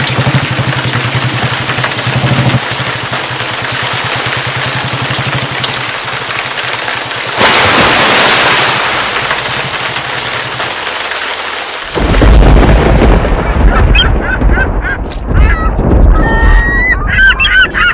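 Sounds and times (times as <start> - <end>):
rain hissing: 0.0 - 15.9
deep thunder rumble: 12.0 - 17.8.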